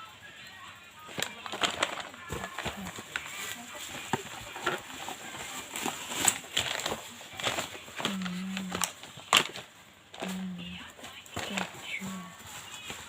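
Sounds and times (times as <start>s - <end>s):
packaging rustling: 1.0s - 13.0s.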